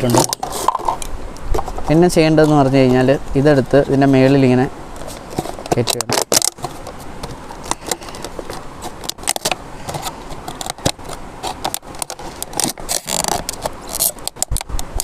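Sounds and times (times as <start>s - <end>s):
plastic bottle crackling: 5.0s - 15.0s.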